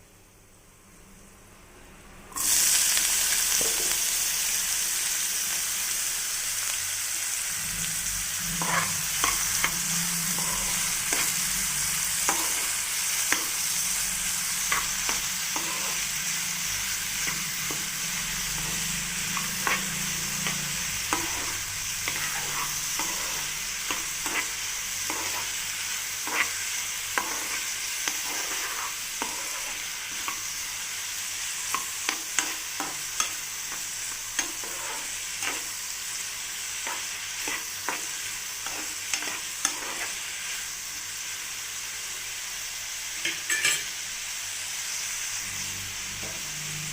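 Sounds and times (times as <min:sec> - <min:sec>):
potatoes sizzling in oil: 0:02.4 - 0:46.9
spatula scraping and tapping pan: 0:08.5 - 0:11.4, 0:14.6 - 0:16.0, 0:18.6 - 0:25.6, 0:26.2 - 0:30.4, 0:31.7 - 0:35.7, 0:36.8 - 0:40.2.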